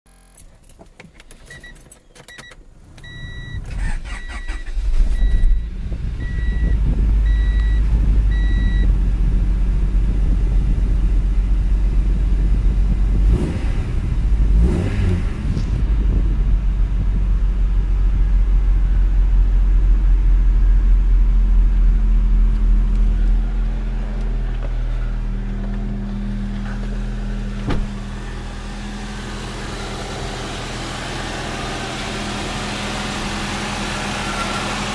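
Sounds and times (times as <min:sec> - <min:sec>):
car engine cranking and idling: 0:00.1 - 0:34.9
electronic warning beep: 0:01.5 - 0:08.9.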